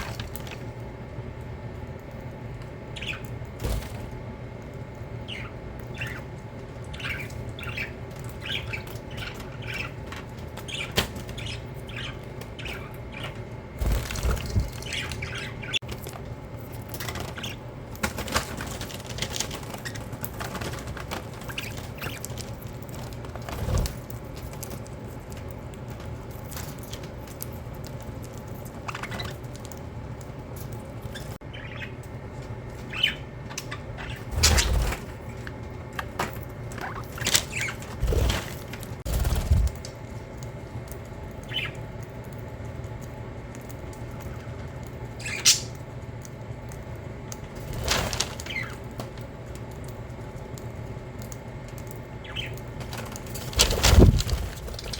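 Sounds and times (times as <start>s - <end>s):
wings fluttering: 0.0s - 0.9s, 1.8s - 54.9s
budgerigars chirping: 6.9s - 10.0s, 14.8s - 15.8s, 31.5s - 32.0s, 45.2s - 45.8s.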